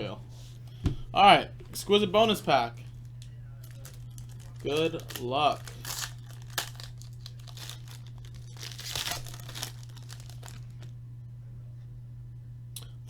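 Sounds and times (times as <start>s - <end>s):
low electrical hum: 0.0s - 13.0s
wrapper crinkling and tearing: 2.9s - 10.9s.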